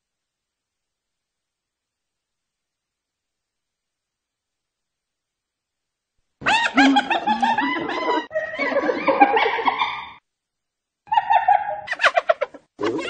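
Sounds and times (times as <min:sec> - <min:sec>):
hyena giggling: 0:06.4 - 0:10.2.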